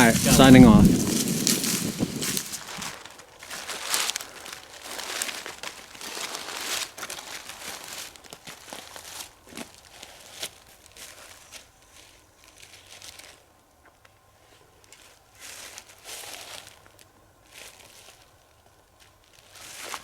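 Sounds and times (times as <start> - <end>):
footsteps on dry leaves: 0.0 - 13.4.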